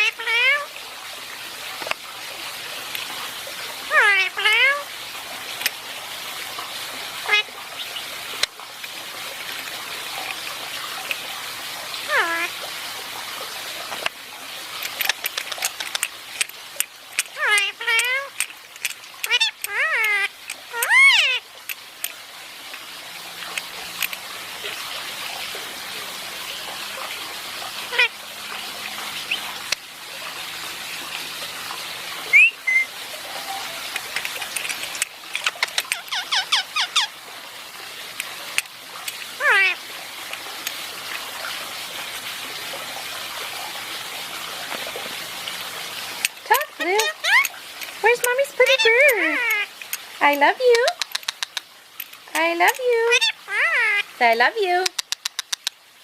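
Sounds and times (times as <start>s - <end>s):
parrot call: 0.0s - 0.7s, 3.9s - 4.9s, 7.2s - 8.1s, 12.1s - 12.5s, 17.4s - 18.4s, 19.2s - 21.4s, 27.9s - 28.1s, 32.3s - 34.0s, 35.4s - 37.1s, 39.4s - 39.8s, 46.5s - 47.5s, 48.6s - 49.7s, 53.0s - 54.1s
parrot calling and squawking: 0.0s - 0.7s, 3.8s - 4.9s, 7.2s - 8.5s, 12.0s - 12.6s, 15.0s - 21.5s, 27.8s - 28.2s, 29.1s - 29.8s, 32.3s - 37.2s, 38.2s - 39.9s, 46.2s - 55.7s
running water hiss: 0.0s - 56.0s.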